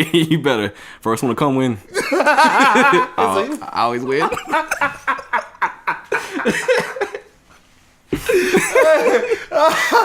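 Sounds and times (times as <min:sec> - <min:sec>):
men laughing: 0:01.9 - 0:07.4, 0:08.1 - 0:10.0.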